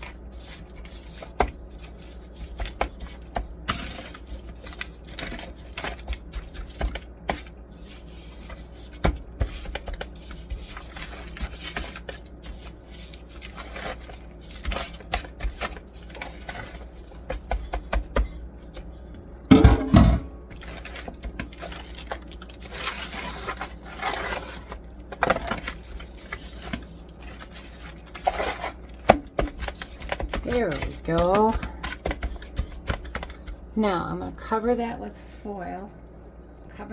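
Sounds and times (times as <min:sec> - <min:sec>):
pan knocks: 0:19.5 - 0:20.4
scrapes in a pan: 0:22.6 - 0:28.8.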